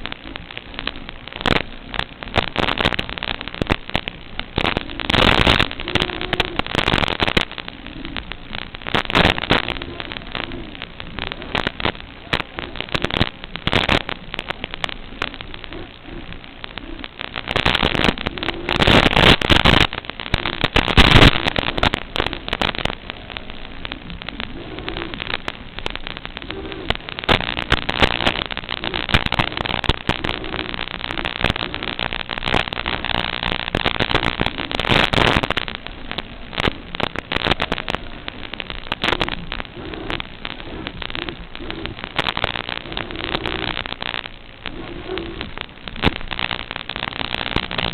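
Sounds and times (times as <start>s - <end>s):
crackling static hiss: 0.0s - 47.9s
sharp clicks: 0.0s - 47.9s.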